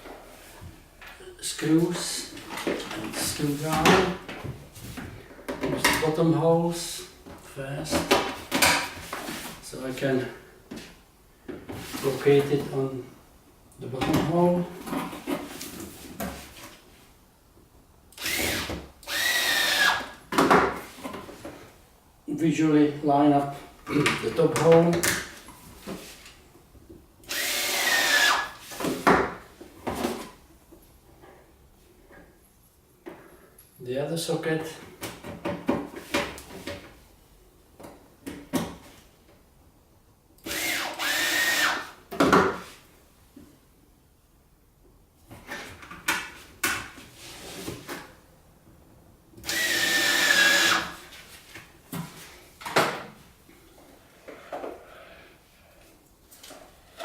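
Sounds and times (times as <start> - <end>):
cordless screwdriver motor whining: 18.2 - 20.1, 27.3 - 28.5, 40.5 - 41.9, 49.4 - 50.9.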